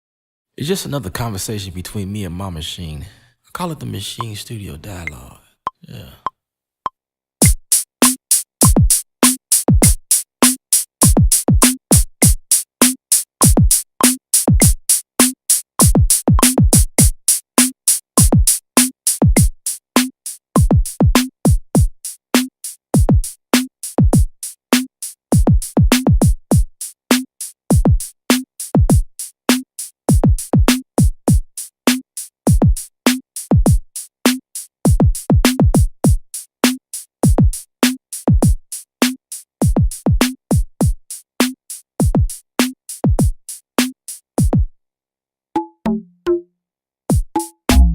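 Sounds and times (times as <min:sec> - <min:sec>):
fast hi-hats: 0:07.4 - 0:44.5
deep kick drums: 0:09.8 - 0:10.0, 0:13.4 - 0:13.7, 0:15.8 - 0:17.1, 0:20.6 - 0:20.9, 0:27.7 - 0:28.0, 0:42.0 - 0:42.3, 0:47.1 - 0:47.9.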